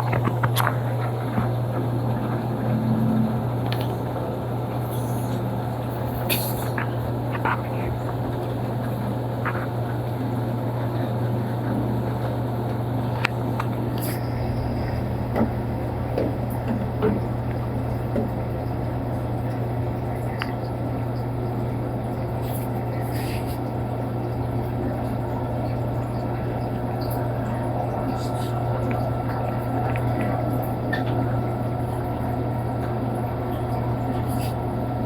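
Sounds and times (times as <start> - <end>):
washing machine running: 0.0 - 35.0.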